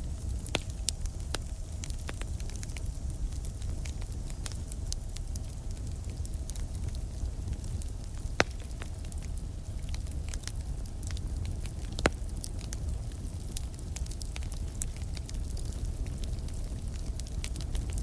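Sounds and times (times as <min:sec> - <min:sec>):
campfire crackling: 0:00.0 - 0:18.0
low fire rumble: 0:00.0 - 0:18.0.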